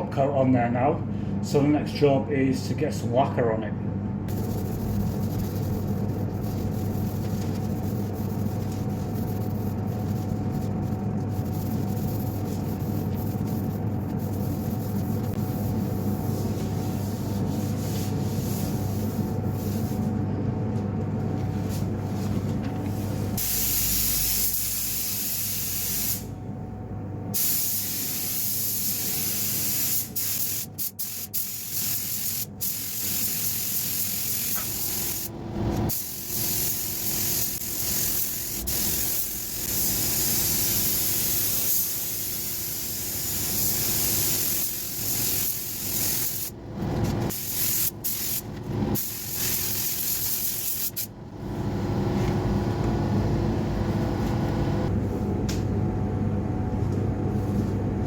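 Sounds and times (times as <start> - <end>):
steady low hum: 0.0 - 58.0
spray gun hissing: 23.4 - 26.3, 27.4 - 35.3, 35.9 - 46.5, 47.3 - 48.4, 49.0 - 51.1.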